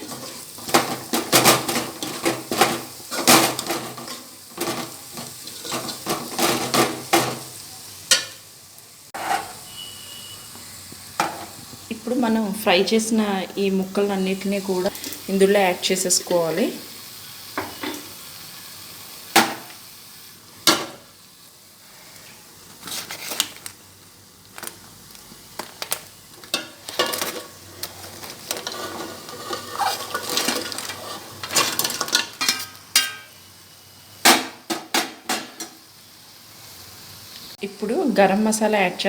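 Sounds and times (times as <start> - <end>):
crab shells clattering against pan: 0.0 - 7.5, 24.5 - 33.4
faint sizzle: 0.0 - 39.0.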